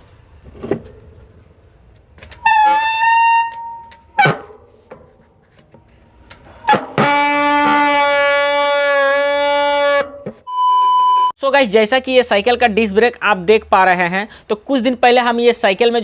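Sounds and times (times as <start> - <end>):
bicycle disc brake squealing: 2.3 - 4.4.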